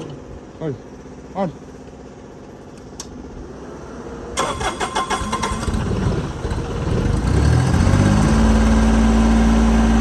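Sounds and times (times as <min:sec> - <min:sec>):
engine starting and running: 0:02.3 - 0:10.0.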